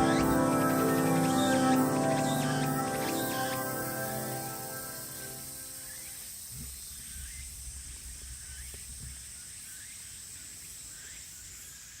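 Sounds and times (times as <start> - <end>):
steady high hiss: 0.0 - 12.0.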